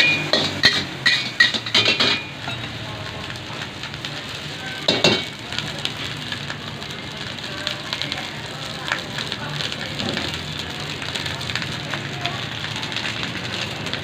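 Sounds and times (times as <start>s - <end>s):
spatula clanking on wok: 0.0s - 2.8s, 4.8s - 5.4s
food sizzling in a wok: 0.0s - 14.0s.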